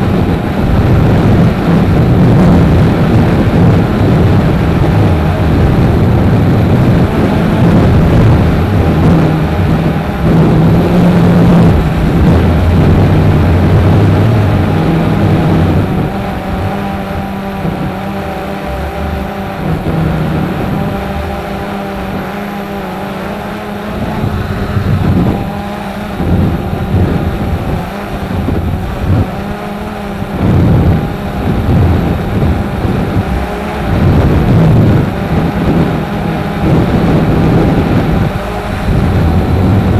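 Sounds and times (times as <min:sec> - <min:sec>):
gusty wind buffeting microphone: 0:00.0 - 0:39.9
steady hum: 0:00.0 - 0:39.9.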